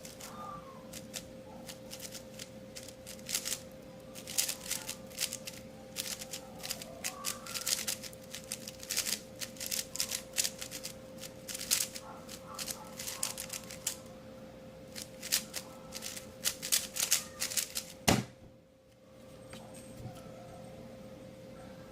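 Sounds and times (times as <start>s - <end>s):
plastic puzzle cube clicking: 0.9s - 1.2s, 1.9s - 3.6s, 4.2s - 14.0s, 15.0s - 18.0s
sharp thump: 18.0s - 18.5s.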